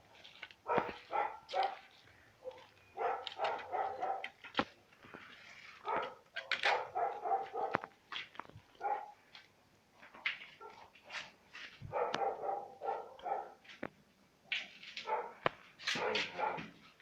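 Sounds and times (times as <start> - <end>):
dog barking: 0.6 - 4.4, 5.8 - 7.9, 8.8 - 9.2, 10.6 - 11.2, 11.9 - 13.6, 15.0 - 16.8.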